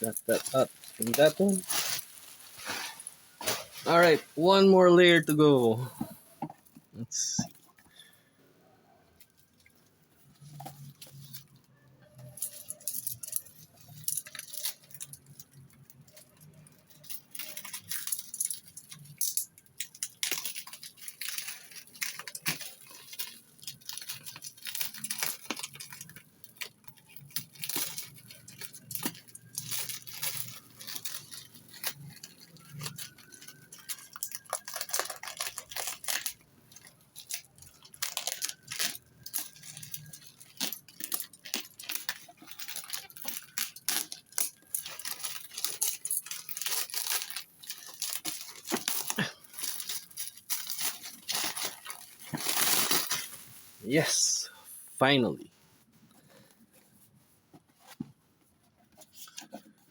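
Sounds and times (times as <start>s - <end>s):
packaging being torn open: 19.9s - 36.4s, 37.3s - 53.3s.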